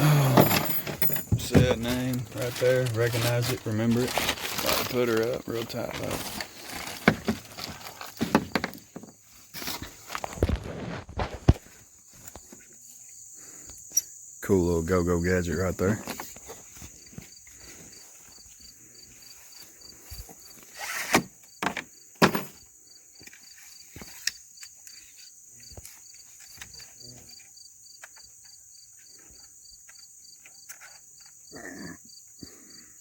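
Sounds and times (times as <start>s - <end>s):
man burping: 0.0s - 0.7s, 31.5s - 32.0s
crickets chirping: 0.0s - 33.0s.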